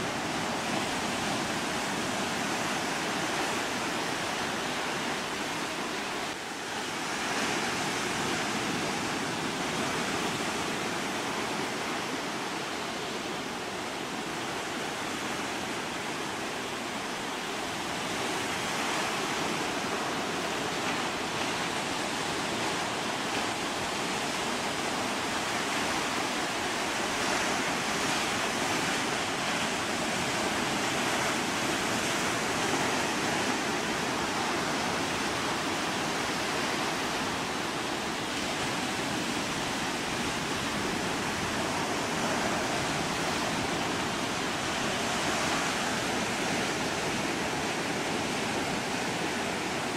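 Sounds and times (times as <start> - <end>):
ocean surf rushing: 0.0 - 49.9.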